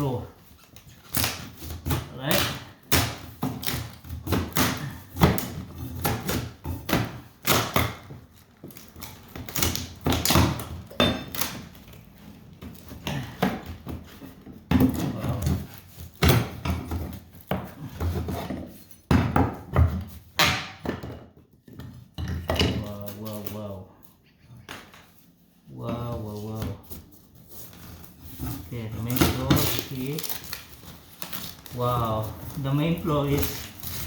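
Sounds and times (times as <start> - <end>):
rubbing and scraping on wood: 24.0 - 34.0.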